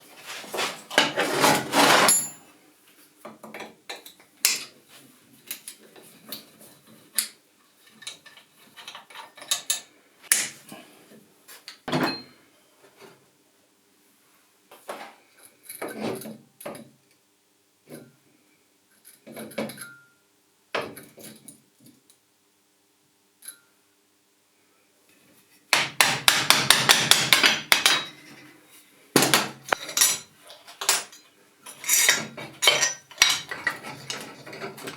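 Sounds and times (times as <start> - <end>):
metal tools clanking: 29.7 - 34.9.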